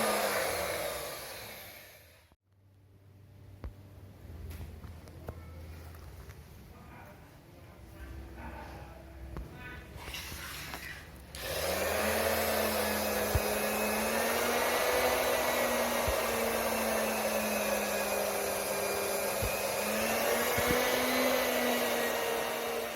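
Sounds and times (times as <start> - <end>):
electric fan motor humming: 0.0 - 2.1, 11.3 - 22.9.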